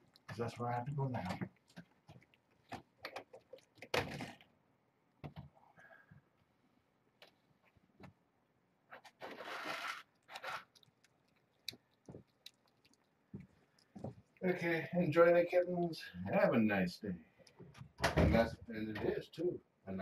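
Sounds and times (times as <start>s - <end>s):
cat eating crunchy food: 0.9s - 4.4s, 9.2s - 14.4s.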